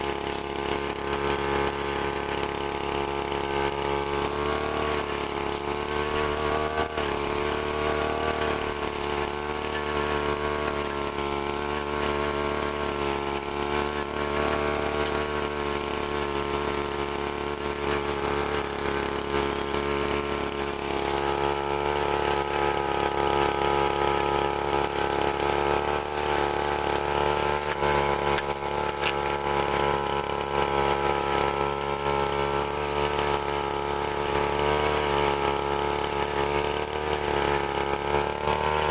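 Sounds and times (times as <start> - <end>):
brushcutter engine running: 0.0 - 38.9.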